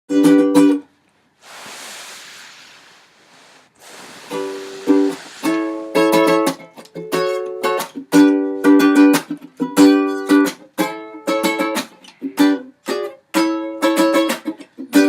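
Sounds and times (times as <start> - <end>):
plucked string instrument strumming: 0.1 - 0.9, 4.8 - 15.0
soft hiss: 0.8 - 6.6.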